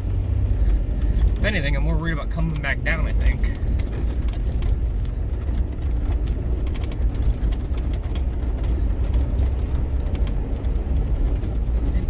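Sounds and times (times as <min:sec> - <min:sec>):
engine and road rumble: 0:00.0 - 0:12.0
light clicks and rattles: 0:00.3 - 0:12.0.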